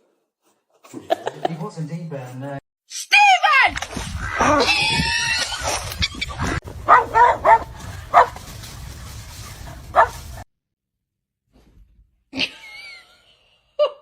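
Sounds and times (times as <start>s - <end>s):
dog yipping barks: 6.8s - 8.4s, 9.9s - 10.2s.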